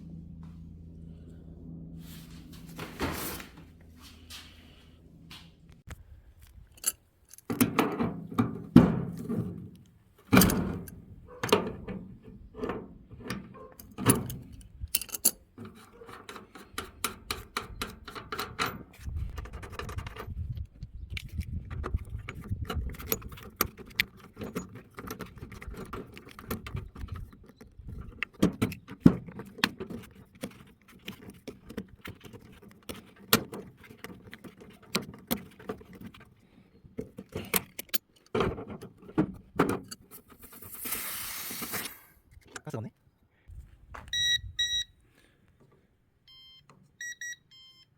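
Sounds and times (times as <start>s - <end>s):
metal tools clinking: 6.7s - 7.6s, 13.6s - 16.6s.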